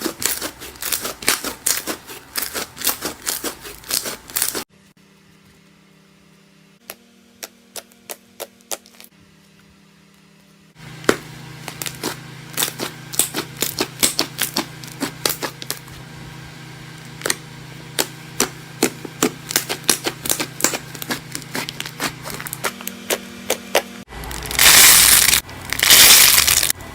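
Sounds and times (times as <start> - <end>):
low hum: 9.0 - 26.9.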